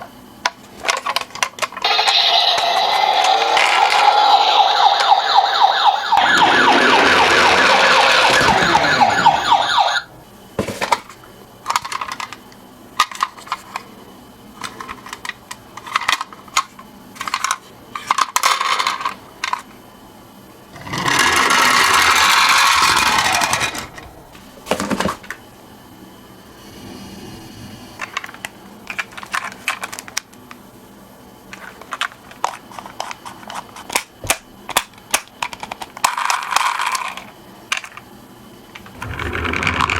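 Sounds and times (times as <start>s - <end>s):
toy cars rolling down a slope: 0.8s - 5.6s, 6.2s - 9.7s, 14.6s - 19.6s, 20.8s - 24.1s, 35.4s - 37.9s, 38.8s - 39.9s
toy ambulance siren wailing: 1.8s - 10.1s, 21.0s - 23.8s.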